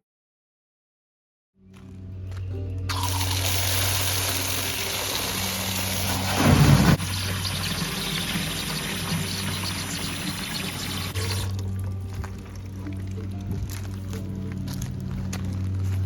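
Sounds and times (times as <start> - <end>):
garden hose spraying water: 2.9 - 12.8
loud rumble: 5.8 - 7.5.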